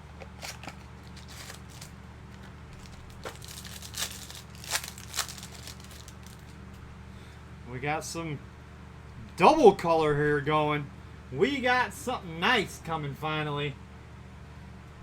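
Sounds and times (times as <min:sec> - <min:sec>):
steady low hum: 0:00.0 - 0:15.0
wrapper crinkling and tearing: 0:00.2 - 0:06.6.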